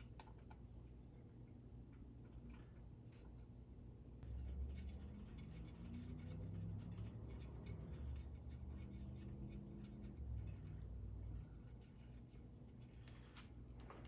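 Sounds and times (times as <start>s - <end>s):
tools scraping metal parts: 4.2s - 13.5s.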